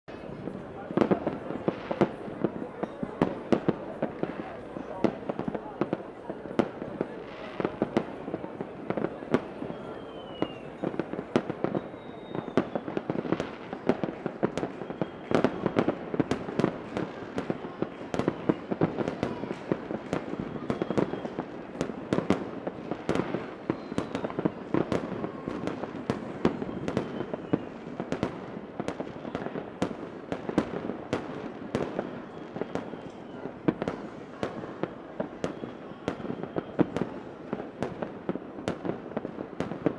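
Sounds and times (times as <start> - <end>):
fireworks bangs and crackling: 0.1 - 39.9
firework whistles gliding in pitch: 9.5 - 13.1, 14.7 - 15.8, 20.3 - 21.5, 23.1 - 25.8, 26.4 - 28.2, 32.0 - 37.2.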